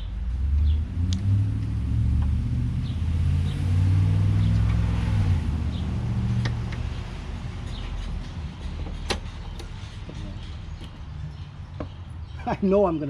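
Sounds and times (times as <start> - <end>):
low engine rumble: 0.0 - 13.0.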